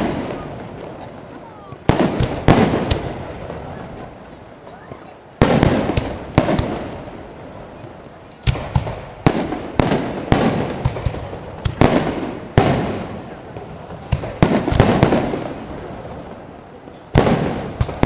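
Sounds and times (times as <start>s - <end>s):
firework shells bursting: 1.8s - 3.3s.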